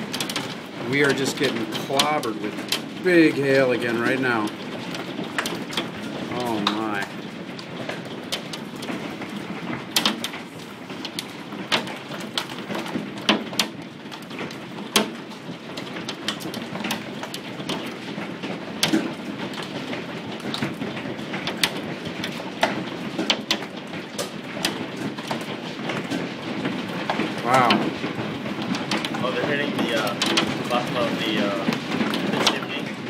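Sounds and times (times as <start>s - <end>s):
hail falling hiss: 0.0s - 33.0s
hailstones cracking on hard surfaces: 0.0s - 33.0s.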